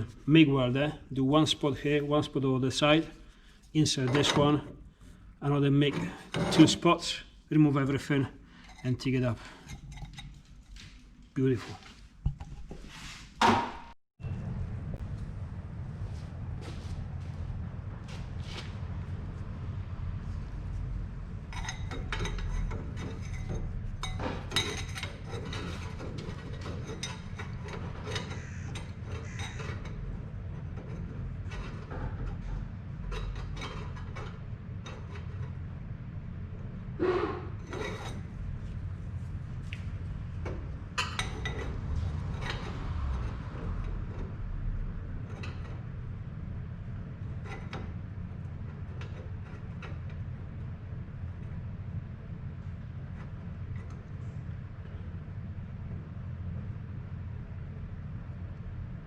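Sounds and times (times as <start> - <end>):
metal pipes clinking and scraping: 3.9 - 4.7, 5.8 - 7.2, 8.5 - 11.0, 21.5 - 35.6, 37.0 - 38.4, 40.4 - 45.9
steady low hum: 14.2 - 59.0.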